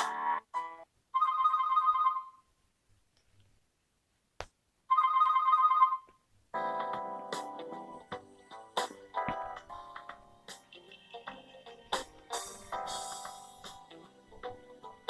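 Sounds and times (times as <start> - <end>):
musical ringtone: 0.0 - 2.4, 4.9 - 15.0
phone ringing like old bell: 1.2 - 2.4, 4.9 - 6.1.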